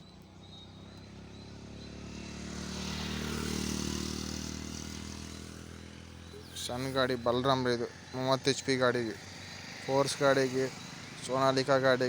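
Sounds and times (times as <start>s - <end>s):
motor vehicle passing by: 0.0s - 12.0s.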